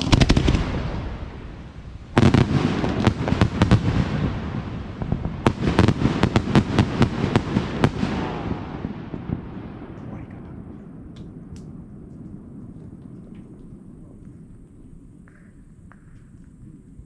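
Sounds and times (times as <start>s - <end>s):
crackling firework pops: 0.0s - 1.3s, 9.1s - 17.0s
firework boom: 0.0s - 17.0s
low rumble: 8.2s - 17.0s.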